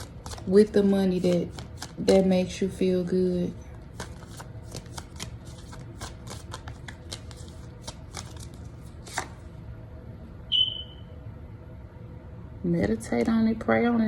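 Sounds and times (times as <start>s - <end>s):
cards being shuffled: 0.0s - 2.3s, 3.9s - 9.4s
short high ping: 10.5s - 11.1s.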